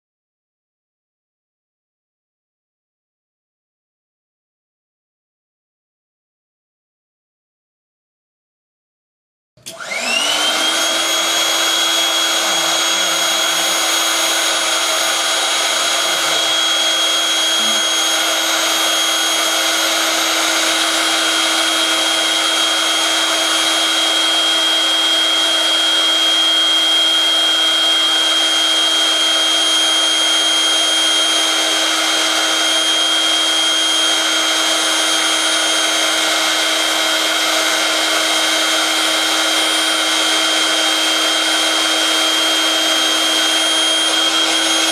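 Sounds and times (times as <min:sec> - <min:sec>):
electric air blower whining: 0:09.6 - 0:44.9.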